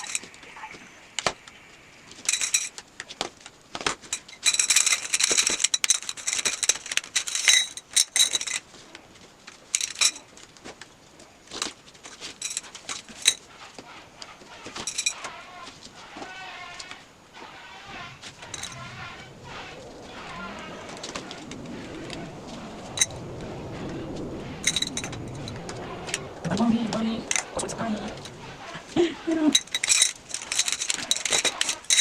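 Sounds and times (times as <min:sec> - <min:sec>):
metal rack parts clinking: 0:14.6 - 0:15.4, 0:18.4 - 0:18.9, 0:29.5 - 0:32.0.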